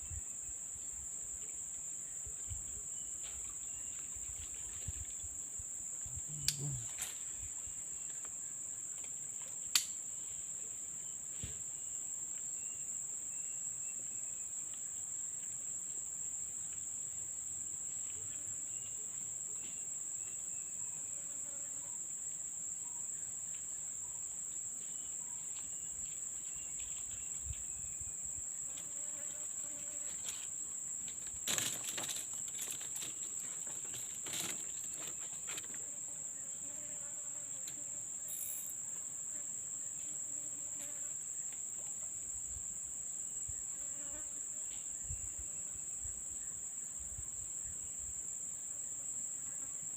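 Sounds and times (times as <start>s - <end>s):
high-pitched insect drone: 38.2s - 38.8s.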